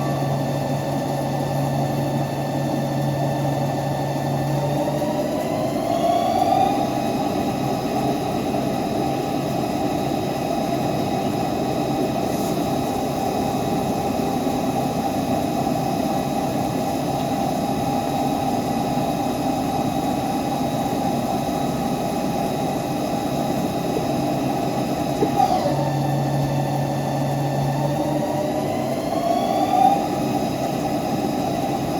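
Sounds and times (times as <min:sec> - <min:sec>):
lathe spindle whine and hum: 0:00.0 - 0:31.9.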